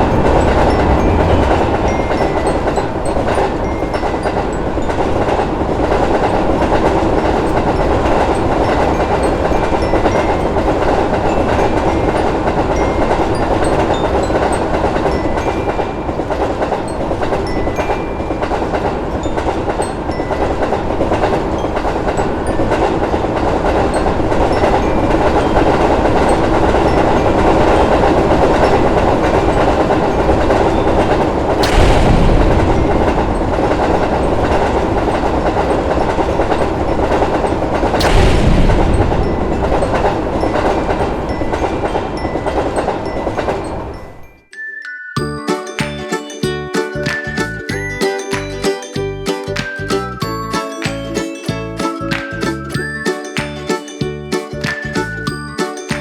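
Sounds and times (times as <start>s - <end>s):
train rumbling past on rails: 0.0s - 44.4s.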